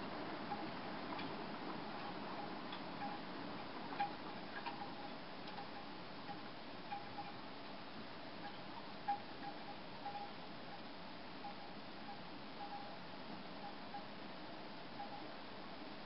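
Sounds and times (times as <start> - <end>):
bamboo wind chime clacking: 3.9 - 7.4.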